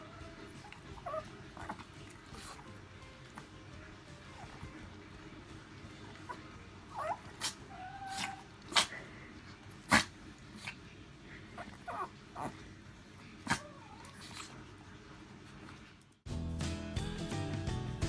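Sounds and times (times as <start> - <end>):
dog whimpering: 0.0 - 2.7, 4.1 - 5.0, 6.1 - 9.0, 11.6 - 12.6, 13.4 - 14.6
small dog sneezing: 7.0 - 9.1, 9.8 - 10.8, 13.4 - 14.6.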